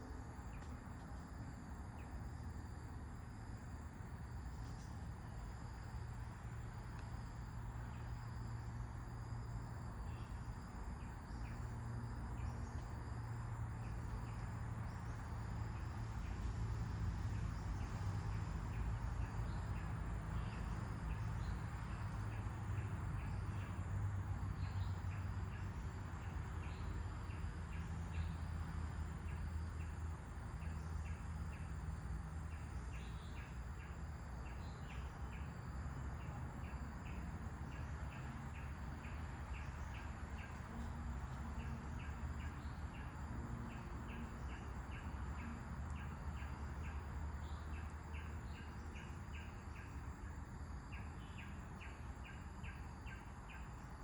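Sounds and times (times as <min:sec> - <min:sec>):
insects trilling: 0:00.0 - 0:54.0.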